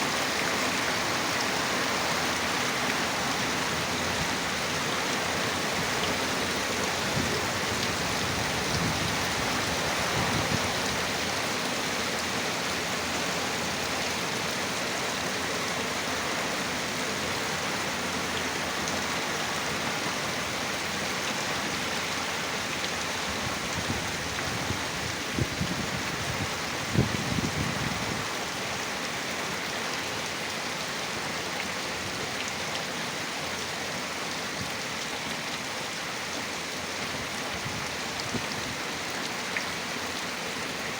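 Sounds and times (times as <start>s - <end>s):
heavy rain pouring: 0.0s - 40.9s
strong wind gusts: 7.0s - 11.2s, 23.3s - 28.3s.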